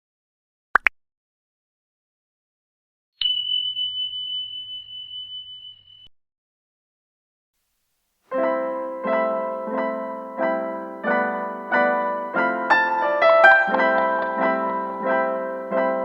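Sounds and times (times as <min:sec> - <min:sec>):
high ringing chime: 0:03.2 - 0:06.1
piano music: 0:08.3 - 0:16.0.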